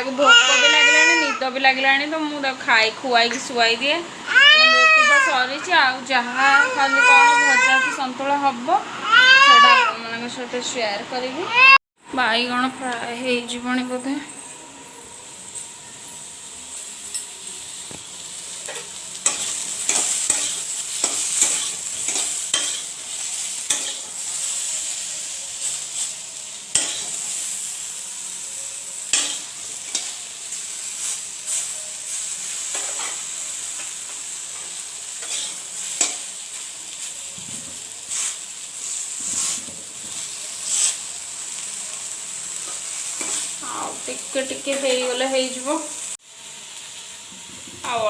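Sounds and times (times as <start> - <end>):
food sizzling in hot oil: 0.0 - 48.0
spatula scraping a pan: 18.6 - 24.2, 35.2 - 36.2, 38.1 - 41.0.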